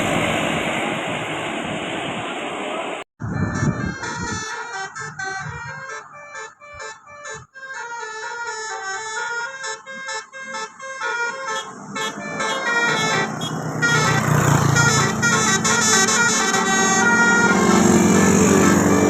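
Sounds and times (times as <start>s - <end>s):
multi-tone bus horn melody: 3.2s - 19.0s.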